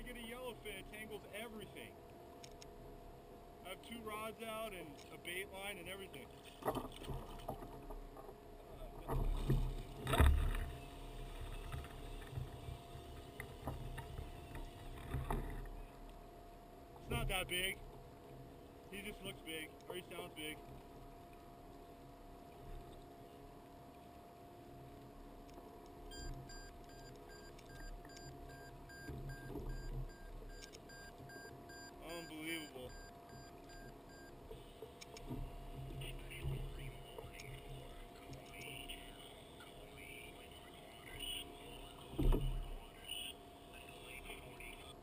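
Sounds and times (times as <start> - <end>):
thin steady hum: 0.0 - 45.0
water and wind against a kayak: 5.8 - 19.7, 20.5 - 31.7, 33.2 - 45.0
faint ticks: 20.6 - 31.9
electronic alarm beeping: 26.1 - 34.4.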